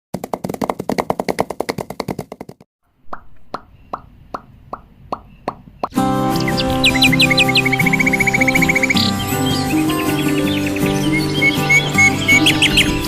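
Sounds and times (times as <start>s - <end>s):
music with chirping birds: 5.2s - 13.0s.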